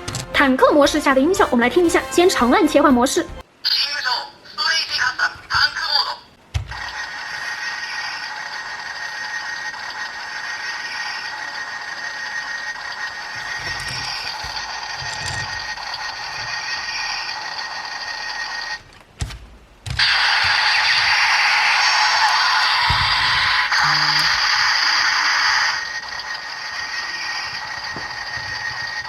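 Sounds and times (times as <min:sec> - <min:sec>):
toy speaker mechanical rattling: 0:06.7 - 0:18.8, 0:20.0 - 0:29.0.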